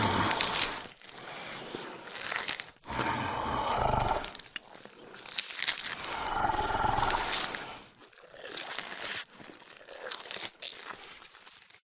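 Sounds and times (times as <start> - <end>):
growling calls: 2.8 - 4.5, 6.0 - 7.6
dinosaur roar: 2.9 - 4.4, 6.0 - 7.6.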